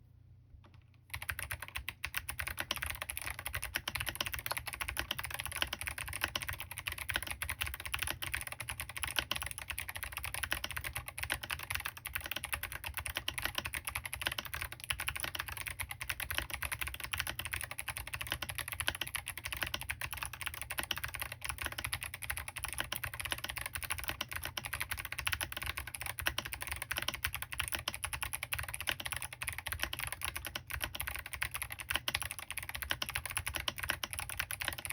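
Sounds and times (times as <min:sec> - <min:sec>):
rapid mechanical keyboard typing: 0:01.1 - 0:34.9.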